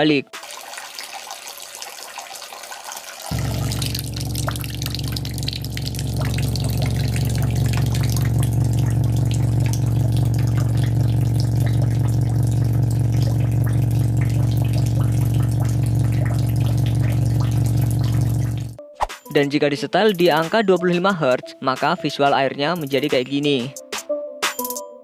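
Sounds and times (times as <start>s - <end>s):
water from hose splashing: 0.3s - 18.8s
subwoofer low hum: 3.3s - 18.8s.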